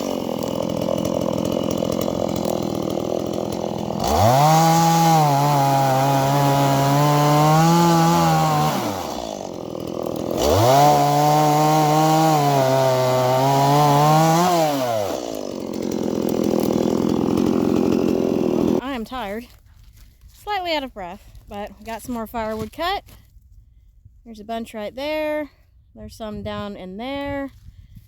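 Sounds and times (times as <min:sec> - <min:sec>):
chainsaw revving and idling: 0:00.0 - 0:19.0.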